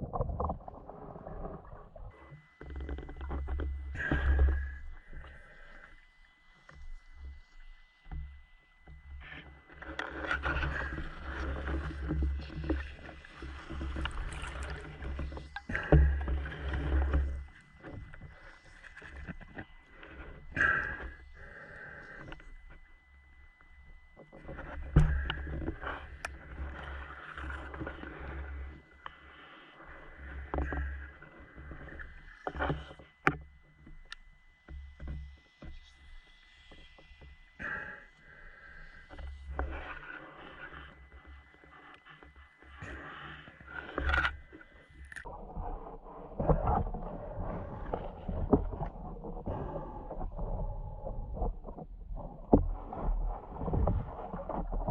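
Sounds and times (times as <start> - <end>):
muffled underwater rumbling: 0.0 - 6.2, 8.3 - 36.0, 37.4 - 54.9.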